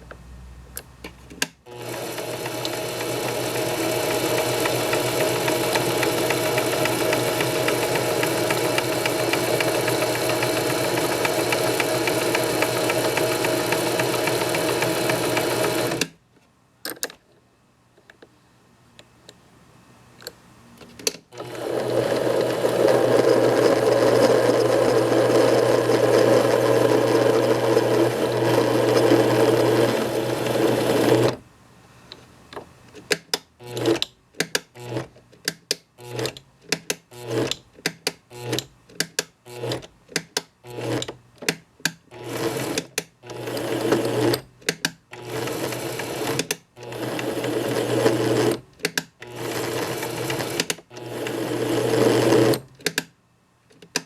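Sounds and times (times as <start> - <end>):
benchtop lathe running: 1.7 - 16.0, 21.4 - 31.4.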